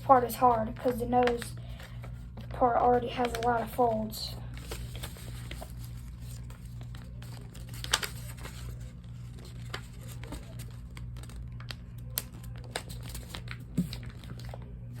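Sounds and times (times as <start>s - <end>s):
paper being folded and crinkling: 0.0s - 15.0s
steady low hum: 0.0s - 15.0s.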